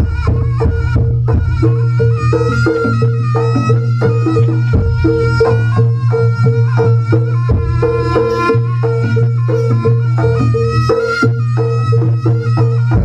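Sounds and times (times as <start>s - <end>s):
drum strokes: 0.0s - 13.0s
wavering high melody: 0.0s - 13.0s.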